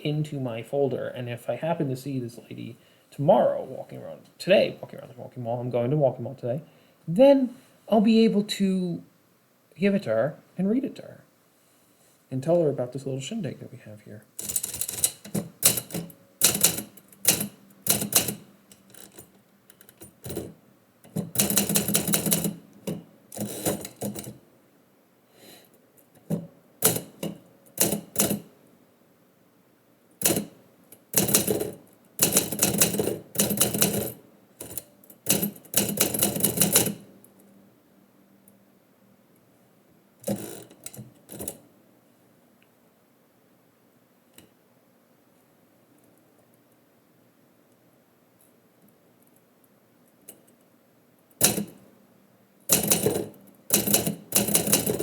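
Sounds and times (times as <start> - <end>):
typewriter keystrokes: 14.4 - 19.3, 21.1 - 24.3, 26.8 - 28.4, 51.4 - 51.8, 52.7 - 55.0.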